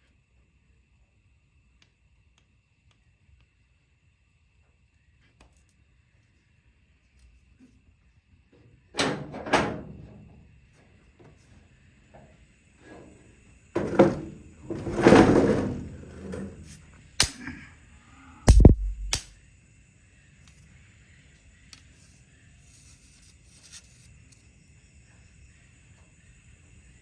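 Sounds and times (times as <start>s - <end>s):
scraping rumble: 12.8s - 16.7s
knocks and thuds: 18.5s - 19.2s.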